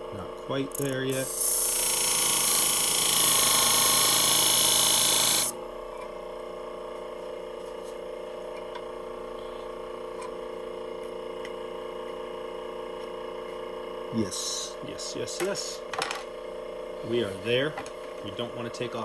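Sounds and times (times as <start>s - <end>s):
blade grinding on sharpening wheel: 0.7s - 5.5s
motor humming: 0.8s - 5.5s.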